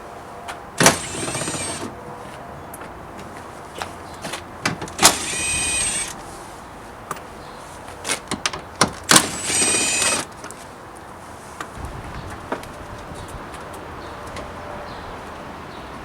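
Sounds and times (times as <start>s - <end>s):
power driver whining: 0.8s - 2.0s, 4.7s - 6.3s, 9.1s - 10.4s.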